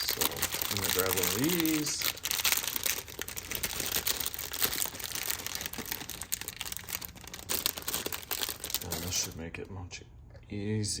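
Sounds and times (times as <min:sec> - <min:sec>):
packaging crinkling: 0:00.0 - 0:09.6.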